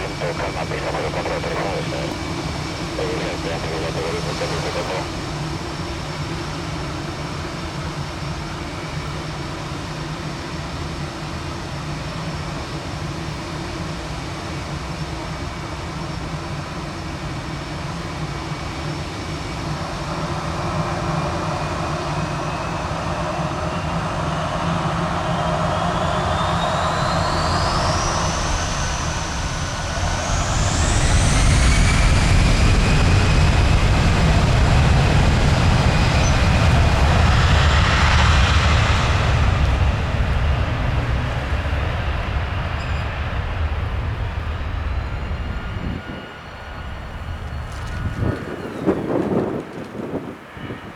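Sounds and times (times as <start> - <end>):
loud low jet rumble: 0.0 - 5.4, 27.1 - 49.1
jet engines whining: 0.0 - 6.4, 21.5 - 50.9.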